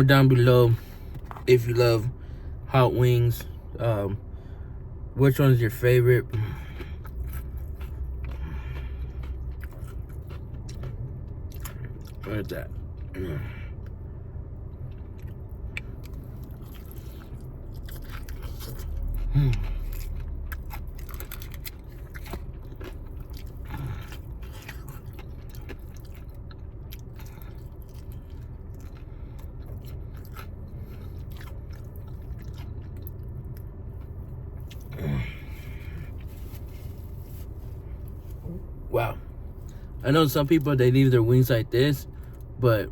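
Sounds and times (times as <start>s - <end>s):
chewing chicken wings: 6.3s - 13.2s, 14.9s - 36.7s.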